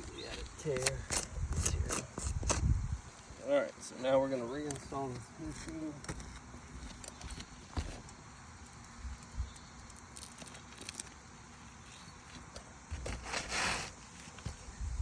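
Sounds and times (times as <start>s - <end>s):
shingle scraping rustle: 0.0s - 14.7s
soft knocks of roof shingle: 5.6s - 8.8s, 12.2s - 14.6s.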